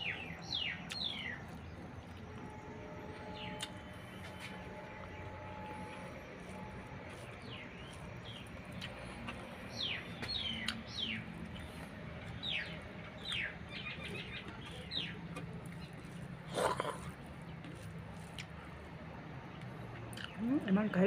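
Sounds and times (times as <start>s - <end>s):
small bird chirping: 0.0s - 1.7s, 7.1s - 16.0s
steady low hum: 0.0s - 21.0s.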